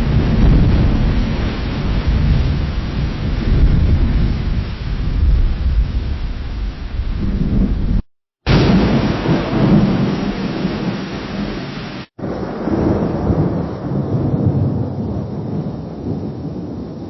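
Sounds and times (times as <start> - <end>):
rolling thunder: 0.0 - 17.0
sharp lightning crack: 8.5 - 14.8.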